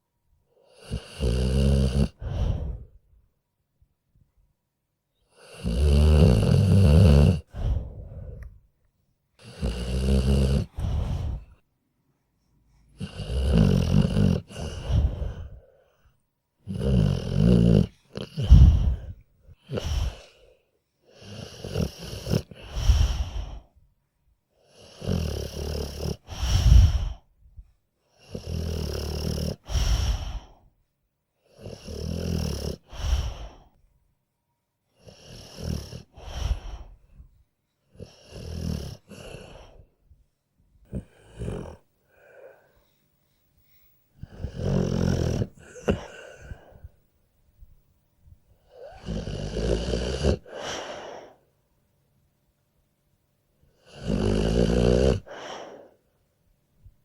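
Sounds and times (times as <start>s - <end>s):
dog snoring: 0.6s - 3.0s, 5.3s - 8.6s, 9.4s - 11.6s, 12.9s - 15.8s, 16.6s - 20.5s, 21.1s - 23.7s, 24.6s - 27.2s, 28.2s - 30.6s, 31.5s - 33.7s, 35.0s - 37.1s, 37.9s - 39.9s, 40.8s - 42.7s, 44.2s - 47.0s, 48.6s - 51.4s, 53.7s - 56.0s.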